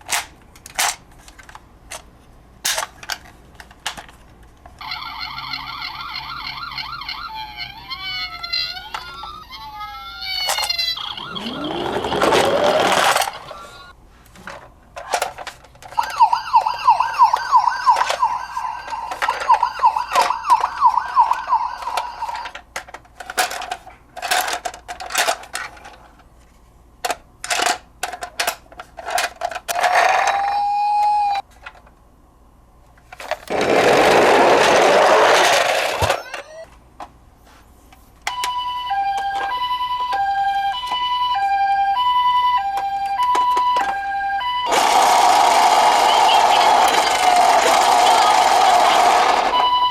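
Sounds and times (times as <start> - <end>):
toy electronic sirens: 4.8 - 13.9, 15.9 - 22.6, 29.7 - 31.4, 33.7 - 36.7, 38.3 - 49.9
clicks and knocks from toys: 17.2 - 26.3, 27.0 - 30.4.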